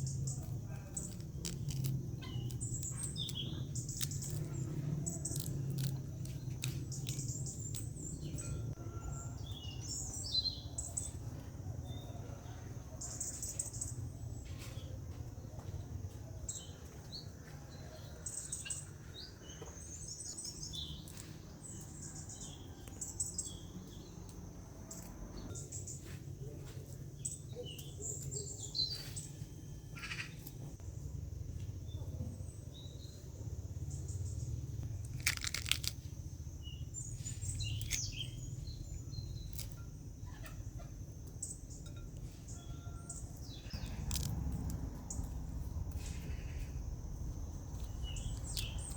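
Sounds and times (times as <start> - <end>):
small birds chirping: 0.0 - 48.9
low steady rumble: 29.6 - 48.9.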